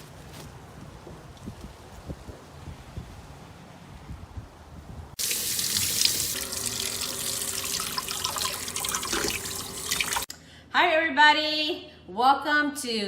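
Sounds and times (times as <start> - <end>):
tap water running into sink: 5.2 - 10.3.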